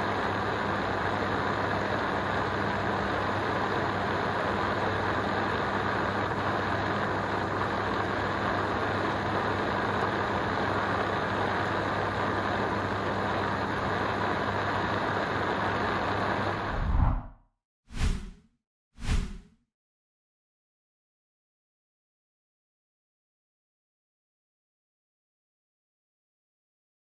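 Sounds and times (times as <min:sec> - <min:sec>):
low hum: 0:16.7 - 0:18.4.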